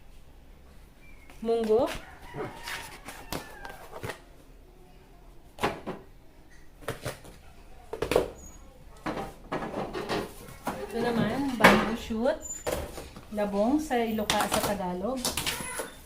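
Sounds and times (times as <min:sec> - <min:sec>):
food containers knocking and clacking: 0:05.6 - 0:08.4, 0:09.0 - 0:16.0.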